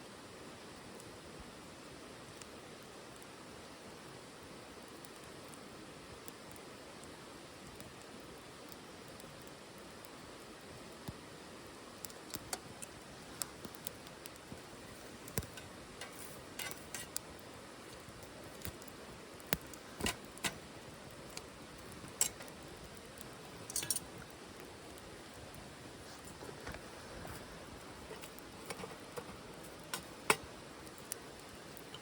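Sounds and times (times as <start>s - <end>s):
faint steady hiss: 0.0s - 32.0s
wood fire crackling: 0.1s - 32.0s
metallic clinks: 23.6s - 24.1s.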